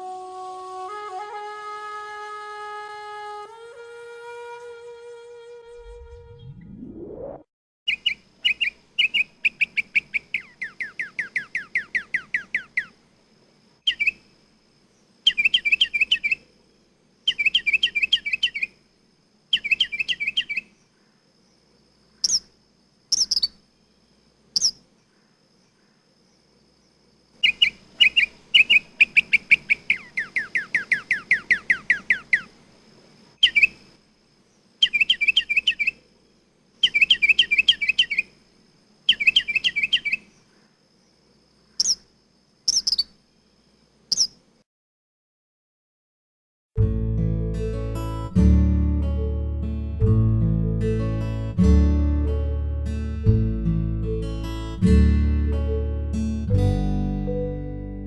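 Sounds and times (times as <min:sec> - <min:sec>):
mockingbird singing: 0:07.9 - 0:13.0, 0:13.8 - 0:14.2, 0:15.2 - 0:16.4, 0:17.3 - 0:18.8, 0:19.5 - 0:20.8, 0:22.2 - 0:22.5, 0:23.1 - 0:23.6, 0:24.6 - 0:24.8, 0:27.4 - 0:32.5, 0:33.4 - 0:33.8, 0:34.8 - 0:36.0, 0:36.8 - 0:38.3, 0:39.1 - 0:40.5, 0:41.7 - 0:42.0, 0:42.7 - 0:43.2, 0:44.1 - 0:44.4.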